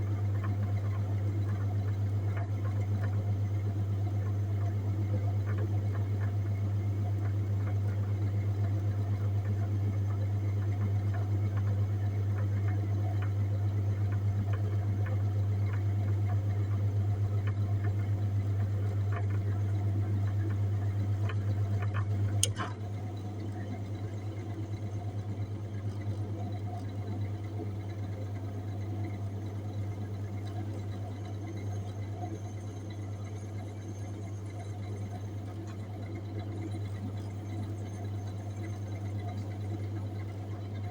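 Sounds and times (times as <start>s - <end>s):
refrigerated display case humming: 0.0s - 40.9s
sharp click: 22.4s - 22.8s.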